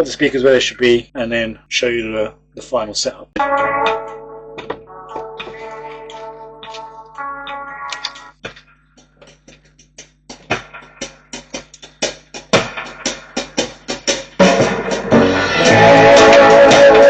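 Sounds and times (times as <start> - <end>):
full band playing: 3.4 - 4.1, 14.4 - 17.0
sharp drum hits: 3.4 - 8.3, 10.4 - 17.0.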